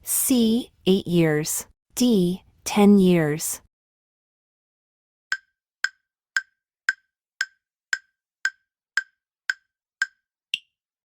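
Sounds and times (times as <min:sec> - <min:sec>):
wood-block timer ticks: 0:05.3 - 0:10.8.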